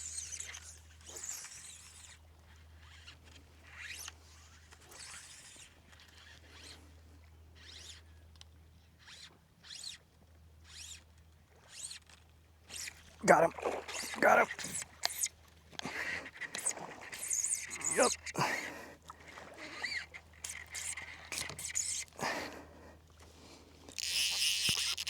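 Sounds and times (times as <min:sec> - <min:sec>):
fly line zipping through rod guides: 0:12.8 - 0:18.4, 0:19.6 - 0:22.2, 0:23.9 - 0:25.0.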